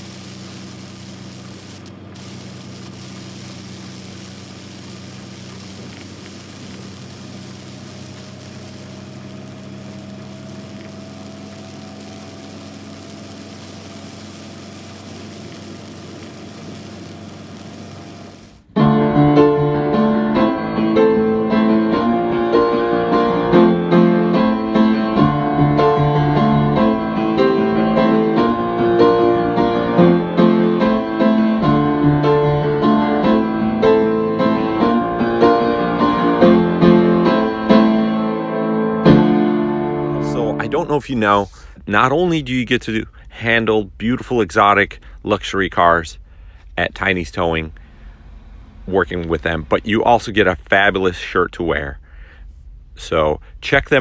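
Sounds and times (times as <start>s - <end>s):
truck engine and road drone: 0.0s - 45.2s, 45.8s - 51.0s
loud piano music: 18.8s - 40.7s.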